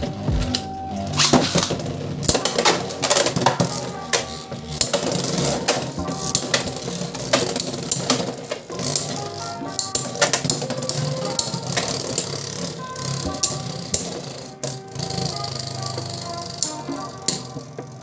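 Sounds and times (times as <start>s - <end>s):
background music: 0.0s - 18.0s
spinning tops clashing: 1.1s - 18.0s.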